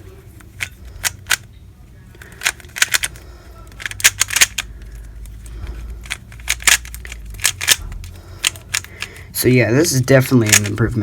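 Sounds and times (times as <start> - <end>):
puzzle cube layers clicking: 2.4 - 4.7, 6.0 - 7.8.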